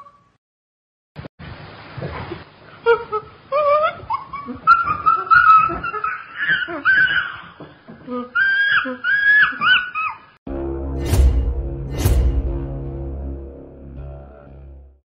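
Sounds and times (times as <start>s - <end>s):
chimpanzee calling: 2.8s - 10.4s.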